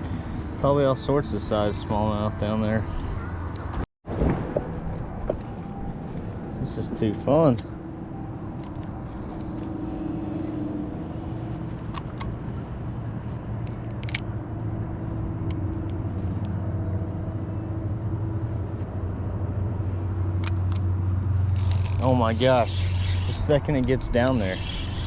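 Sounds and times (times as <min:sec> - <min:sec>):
boat motor humming: 0:21.4 - 0:25.0.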